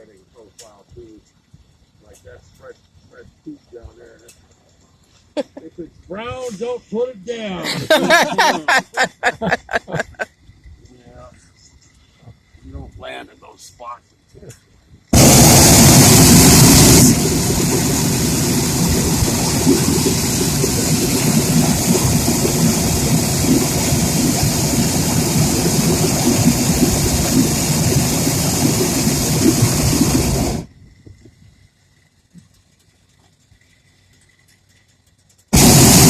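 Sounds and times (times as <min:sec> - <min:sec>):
propane burner roaring: 0:12.4 - 0:34.4, 0:35.3 - 0:36.0.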